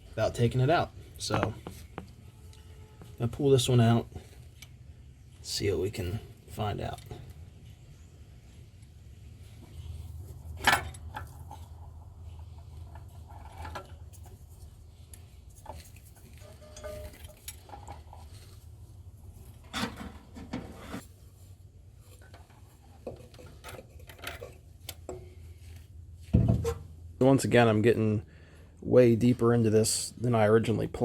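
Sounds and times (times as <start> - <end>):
tools and metal parts clinking: 10.3 - 18.6, 22.1 - 25.3.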